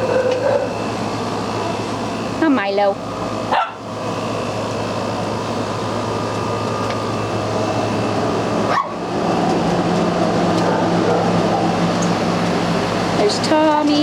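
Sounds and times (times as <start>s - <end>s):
dog sound: 0.0s - 0.8s, 3.5s - 3.8s, 10.6s - 11.7s.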